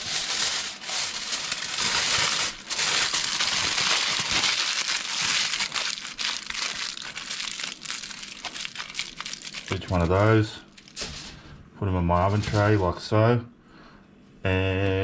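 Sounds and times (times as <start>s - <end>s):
aluminium foil crinkling: 0.0s - 11.4s.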